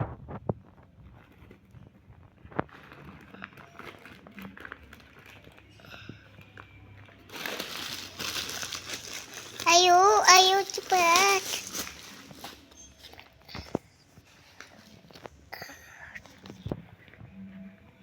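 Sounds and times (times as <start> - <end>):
packaging crinkling and rustling: 0.0 - 6.4, 7.0 - 15.4.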